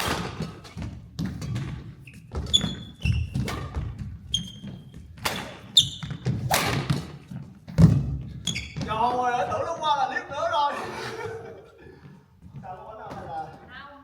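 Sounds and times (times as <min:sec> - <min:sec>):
racket hitting shuttlecock: 0:00.0 - 0:01.8, 0:02.4 - 0:04.2, 0:05.2 - 0:08.1
shoes squeaking on court floor: 0:00.0 - 0:09.8.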